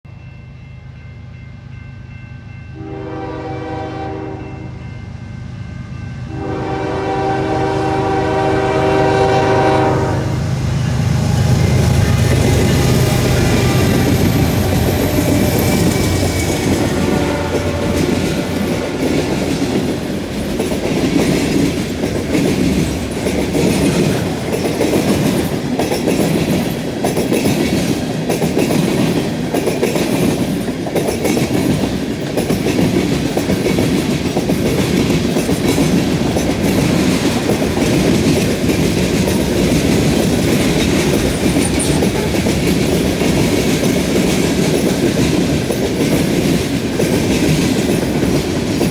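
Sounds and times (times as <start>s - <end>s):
steady train tones: 0.1s - 48.9s
train wheels rumbling: 0.1s - 48.9s
clickety-clack over rail joints: 11.3s - 48.9s.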